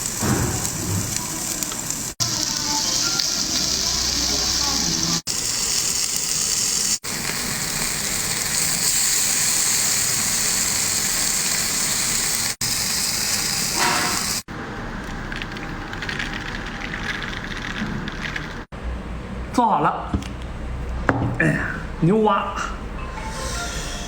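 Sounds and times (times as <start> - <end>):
food sizzling in a wok: 0.0 - 14.5.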